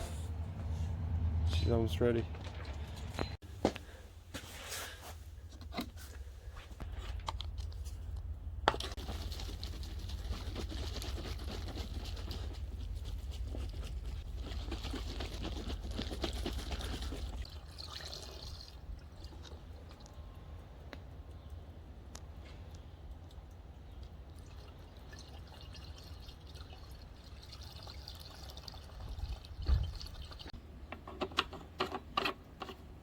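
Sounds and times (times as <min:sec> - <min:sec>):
water trickling and splashing: 0:02.2 - 0:03.4, 0:08.9 - 0:20.2, 0:23.2 - 0:30.6.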